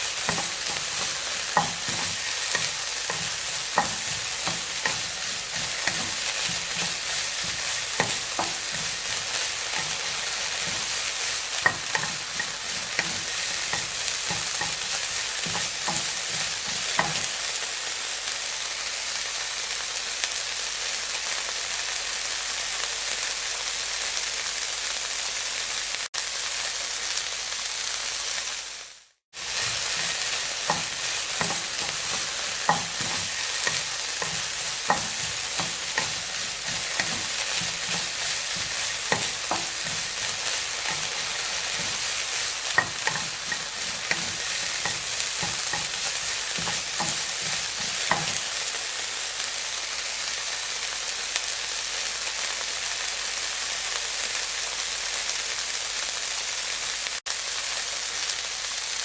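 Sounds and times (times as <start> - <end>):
meat sizzling in hot oil: 0.0 - 59.0
fat crackling and popping: 29.4 - 48.7.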